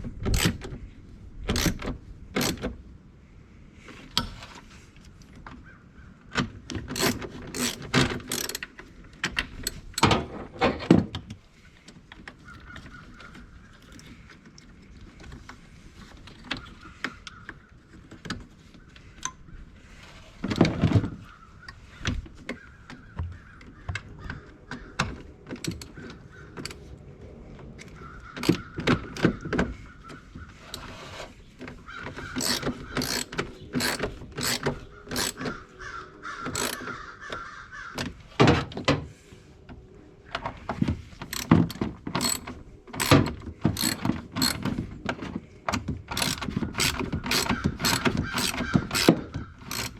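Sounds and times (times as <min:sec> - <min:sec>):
ratchet clicking: 0:00.3 - 0:00.6, 0:01.5 - 0:01.8, 0:02.4 - 0:02.6, 0:06.9 - 0:08.7, 0:25.6 - 0:25.9, 0:28.4 - 0:28.6, 0:32.4 - 0:35.4, 0:36.5 - 0:36.8, 0:41.3 - 0:44.6, 0:46.1 - 0:49.9
tools knocking: 0:07.0 - 0:08.6, 0:32.4 - 0:35.5, 0:36.5 - 0:36.9, 0:41.3 - 0:44.7, 0:46.2 - 0:49.9.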